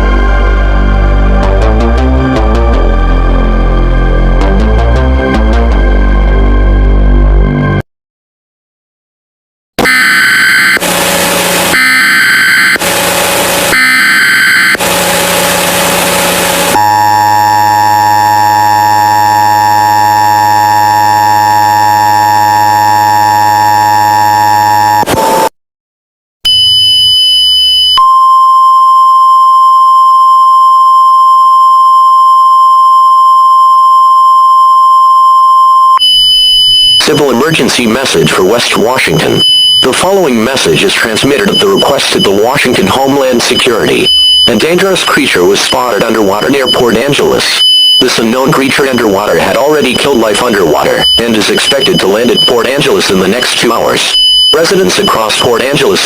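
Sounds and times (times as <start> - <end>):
harsh buzzing data bursts: 9.8 - 24.9, 36.0 - 56.0
steady single-pitch warning tone: 9.8 - 25.5, 26.5 - 37.6, 38.4 - 56.0
two-tone attention signal: 11.7 - 12.8, 13.7 - 14.8, 41.3 - 49.0, 49.6 - 56.0
short beep: 26.4 - 37.2, 39.2 - 39.9, 43.5 - 44.7, 46.5 - 48.2, 51.0 - 55.8.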